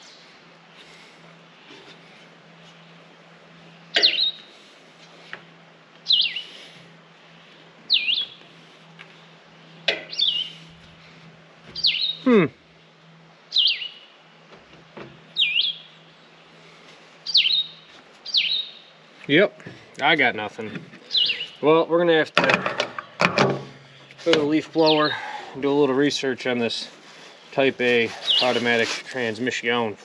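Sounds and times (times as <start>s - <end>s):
bird chirping: 3.9s - 4.6s, 6.0s - 6.7s, 7.9s - 8.5s, 10.0s - 10.7s, 11.7s - 12.4s, 13.5s - 14.2s, 15.3s - 16.5s, 17.2s - 19.0s, 21.0s - 21.7s, 24.0s - 25.4s, 27.2s - 28.7s.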